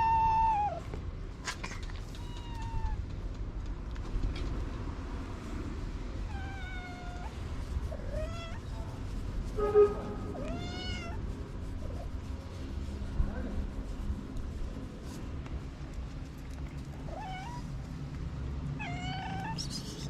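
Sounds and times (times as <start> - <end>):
cat meowing: 0.0 - 0.9, 2.1 - 3.0, 6.3 - 8.7, 10.3 - 11.2, 16.9 - 17.8, 18.8 - 20.0
low background rumble: 0.0 - 20.0.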